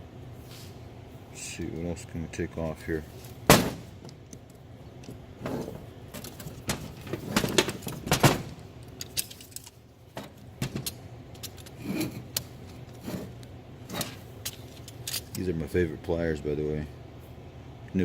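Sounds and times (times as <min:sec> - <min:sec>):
metal clinks of tools and parts: 0:09.0 - 0:09.8, 0:13.9 - 0:15.4.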